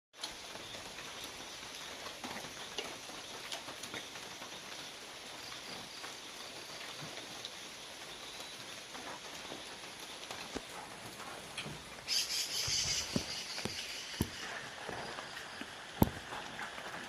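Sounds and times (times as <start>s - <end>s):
background hiss: 0.2s - 17.0s
small clicks and chirps: 11.6s - 16.9s.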